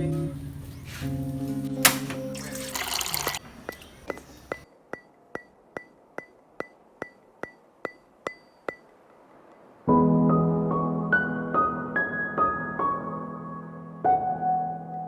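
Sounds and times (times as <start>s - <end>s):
background music: 0.0s - 3.4s, 9.9s - 15.0s.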